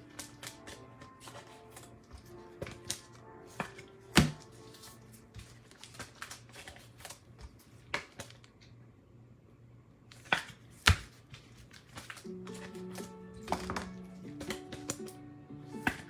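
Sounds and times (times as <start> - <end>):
background music: 0.0 - 5.7, 12.2 - 16.0
trading cards being handled: 0.0 - 8.6, 10.1 - 16.0.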